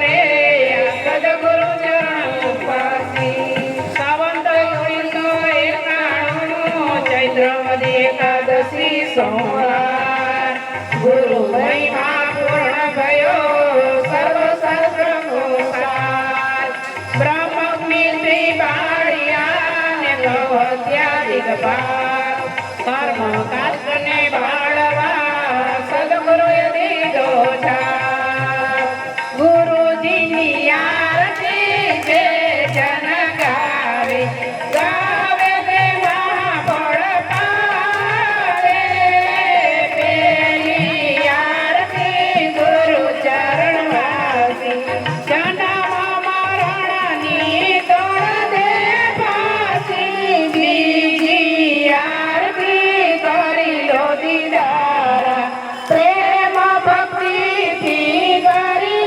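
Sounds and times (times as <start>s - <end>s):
small cymbal ticks: 26.3s - 59.0s.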